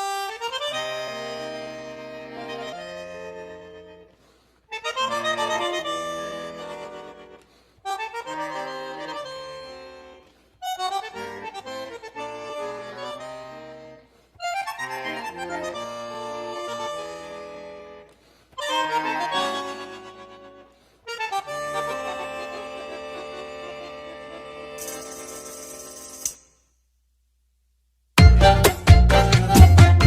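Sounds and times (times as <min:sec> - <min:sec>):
instrumental background music: 0:28.2 - 0:30.0.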